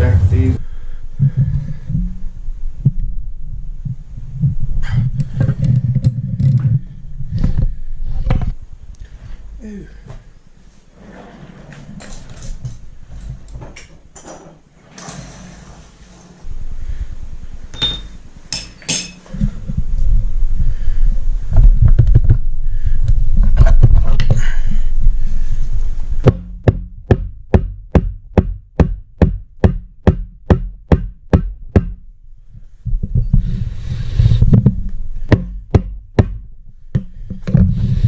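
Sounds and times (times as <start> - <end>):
rubber mallet knocking on metal: 26.3 - 32.0, 34.6 - 36.4.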